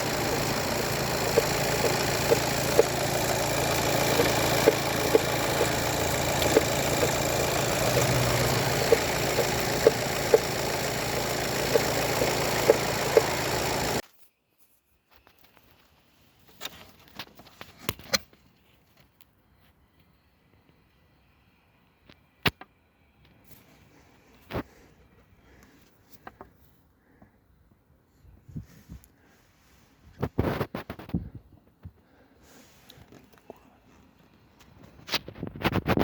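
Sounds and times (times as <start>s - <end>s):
diesel engine idling: 0.0s - 14.0s
engine knocking: 0.0s - 14.0s.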